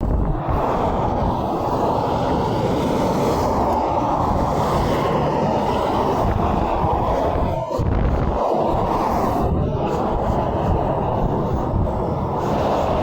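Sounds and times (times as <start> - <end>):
highway traffic rushing: 0.0 - 13.0
wind on microphone: 0.0 - 13.0.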